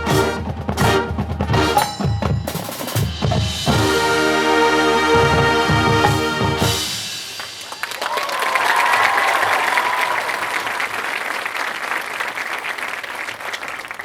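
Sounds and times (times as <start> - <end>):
marching band brass chord: 0.0 - 7.7
crowd applauding: 7.3 - 14.0
person whooping: 7.7 - 10.8.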